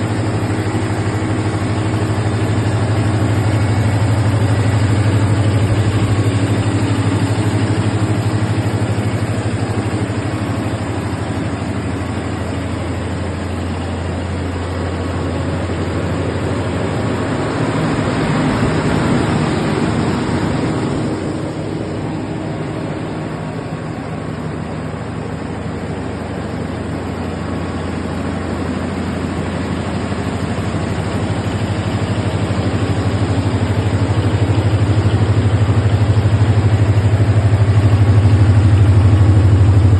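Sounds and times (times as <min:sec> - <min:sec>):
diesel generator drone: 0:00.0 - 0:39.9.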